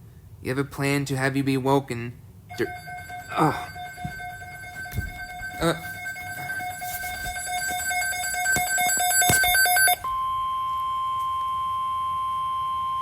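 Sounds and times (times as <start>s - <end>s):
steady alarm tone: 2.5s - 10.7s
two-tone electronic alarm with clicks: 2.5s - 11.6s.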